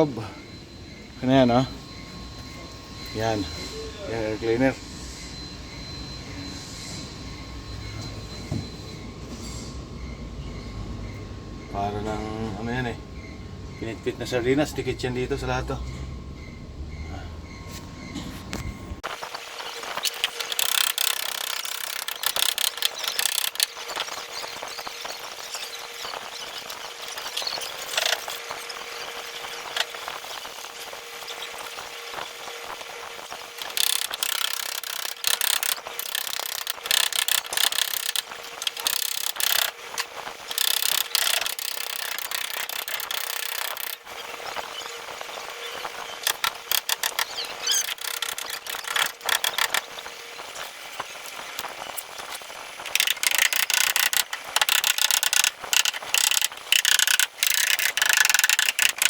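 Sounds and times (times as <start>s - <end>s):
steady hum: 0.0s - 59.0s
hand tools ratcheting and scraping: 18.5s - 31.8s, 33.0s - 59.0s.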